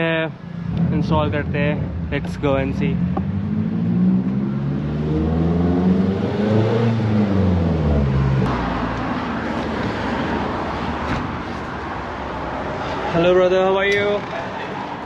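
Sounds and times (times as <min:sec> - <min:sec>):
street noise: 0:00.0 - 0:15.0
vehicle engine passing by: 0:00.6 - 0:10.8.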